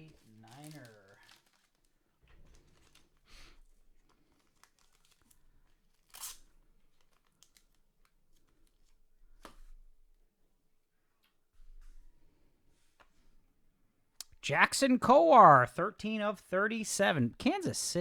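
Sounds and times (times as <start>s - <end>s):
trading card packaging rustling: 0.0s - 3.2s, 3.9s - 9.0s
packaging tearing: 0.1s - 1.9s, 4.0s - 7.8s.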